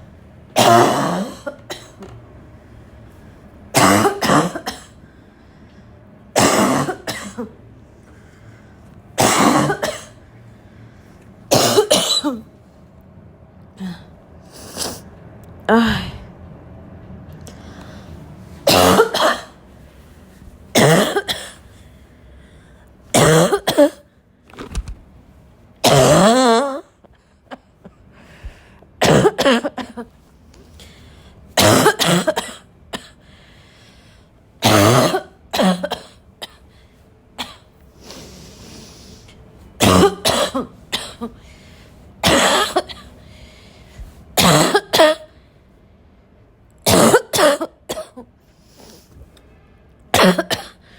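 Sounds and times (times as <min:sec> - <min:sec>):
person barking cough: 0:00.6 - 0:02.1, 0:03.7 - 0:05.0, 0:06.4 - 0:07.5, 0:09.2 - 0:10.2, 0:11.5 - 0:12.4, 0:18.7 - 0:19.6, 0:20.8 - 0:21.6, 0:23.1 - 0:24.0, 0:25.8 - 0:26.8, 0:29.0 - 0:30.0, 0:31.6 - 0:33.2, 0:34.6 - 0:36.6, 0:39.8 - 0:41.4, 0:42.2 - 0:43.1, 0:44.4 - 0:45.3, 0:46.8 - 0:48.2, 0:50.1 - 0:50.8.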